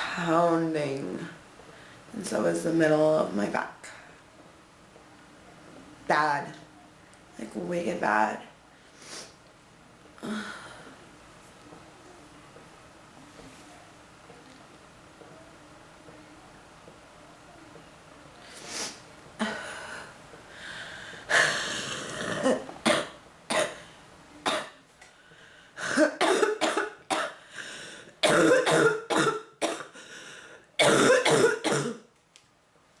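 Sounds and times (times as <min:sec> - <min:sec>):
woman coughing: 0:21.3 - 0:23.8, 0:24.4 - 0:24.8, 0:25.8 - 0:27.4, 0:28.2 - 0:30.0, 0:30.8 - 0:32.0.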